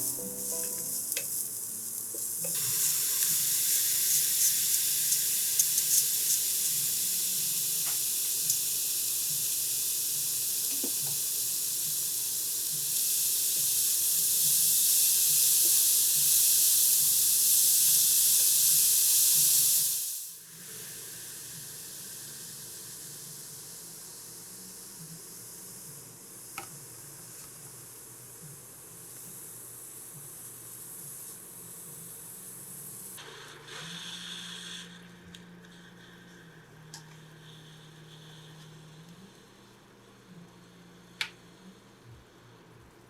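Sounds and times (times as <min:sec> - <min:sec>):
food sizzling in a frying pan: 0:00.0 - 0:27.6.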